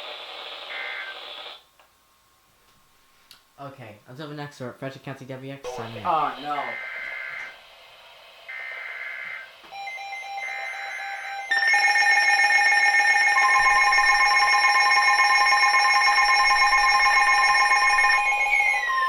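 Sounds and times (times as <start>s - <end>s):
loud steady attention tone: 5.6s - 7.6s, 8.5s - 19.0s
warbling digital data tones: 12.9s - 19.0s.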